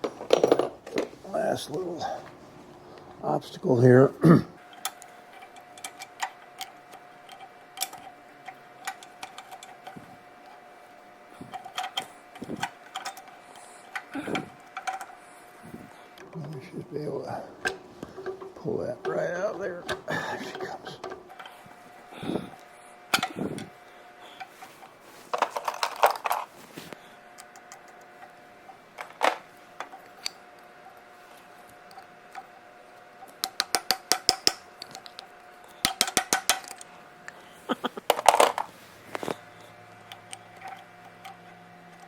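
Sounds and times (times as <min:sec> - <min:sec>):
metal parts clinking and rattling: 0:00.0 - 0:01.1, 0:04.7 - 0:10.1, 0:11.5 - 0:15.2, 0:24.6 - 0:26.5, 0:35.8 - 0:36.9, 0:38.0 - 0:39.4
faint steady hum: 0:00.0 - 0:42.0.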